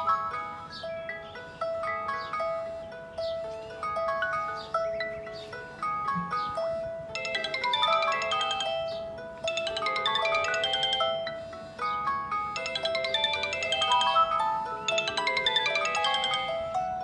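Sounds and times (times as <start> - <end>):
phone ringtone with mallet notes: 0.0 - 17.0.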